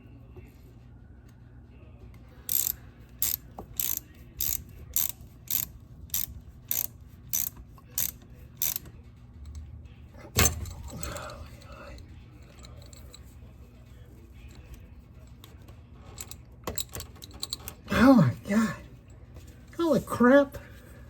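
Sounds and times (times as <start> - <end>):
ratchet wrench clicking: 2.4 - 8.9, 10.4 - 13.2, 16.2 - 17.7.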